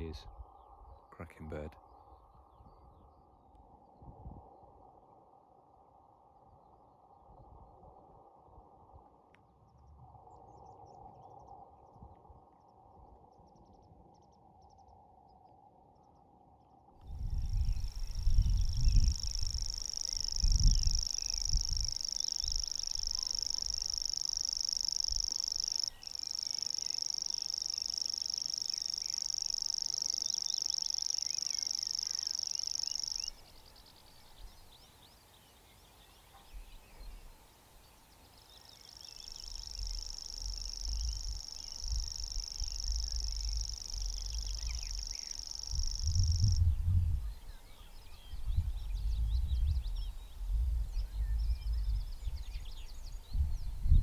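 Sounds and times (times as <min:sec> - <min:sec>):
bird reeling trill: 0:17.1 - 0:49.1.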